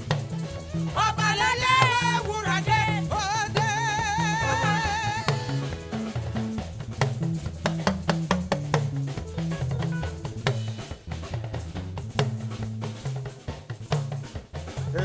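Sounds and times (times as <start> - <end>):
bass guitar: 0.0 - 15.0
drum kit: 0.0 - 15.0
person singing with vibrato: 0.9 - 6.1.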